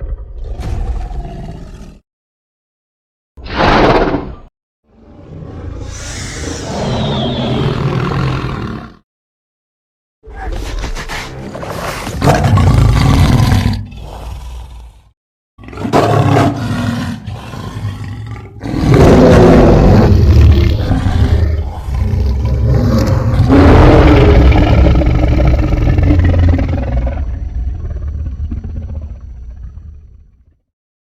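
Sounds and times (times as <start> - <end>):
dinosaur roars: 0.0 - 2.0, 5.0 - 9.0, 11.6 - 30.6
dinosaur growls: 5.2 - 9.0, 11.5 - 30.6.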